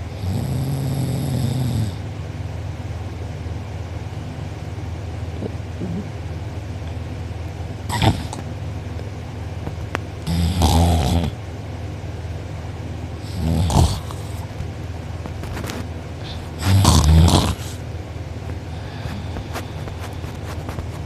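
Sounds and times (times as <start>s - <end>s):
steady low hum: 0.0s - 21.0s
person snoring loudly: 0.1s - 2.0s, 7.9s - 8.4s, 10.2s - 11.4s, 13.2s - 14.4s, 16.2s - 17.8s.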